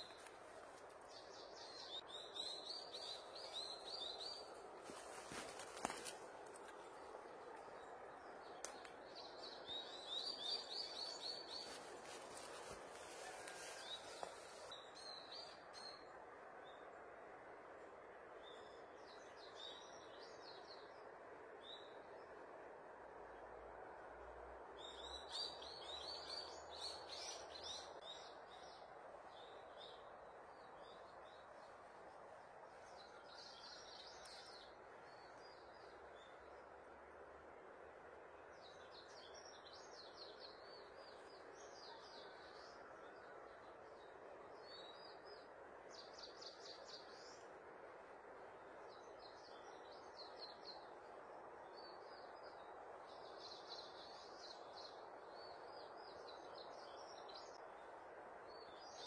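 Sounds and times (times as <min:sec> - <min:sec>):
faint rushing background noise: 0:00.0 - 0:59.0.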